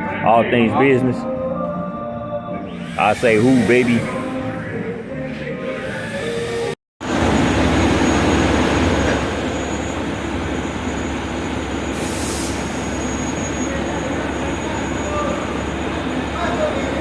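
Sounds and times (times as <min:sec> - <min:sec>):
machine running with hum: 0:07.0 - 0:12.1
brief hiss: 0:12.0 - 0:12.8.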